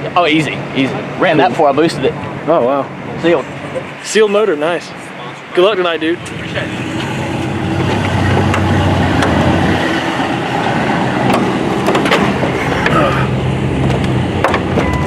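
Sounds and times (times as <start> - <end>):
background chatter: 0.0 - 9.3
car engine idling: 0.0 - 15.0.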